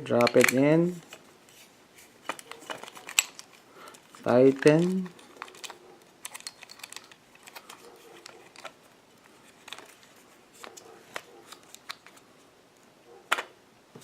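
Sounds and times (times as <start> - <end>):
small metallic clicks and scrapes: 2.2 - 12.3.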